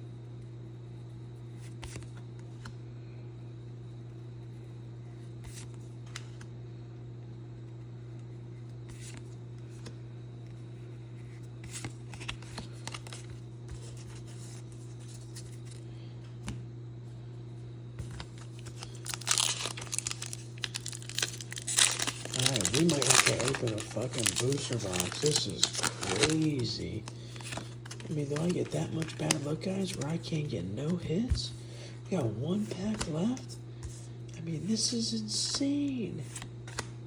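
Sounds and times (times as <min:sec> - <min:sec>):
steady low hum: 0:00.0 - 0:37.0
cards and wrappers crinkling: 0:12.1 - 0:14.1, 0:18.0 - 0:31.5, 0:32.5 - 0:33.5
foil pack torn open: 0:12.3 - 0:13.3, 0:18.2 - 0:30.1.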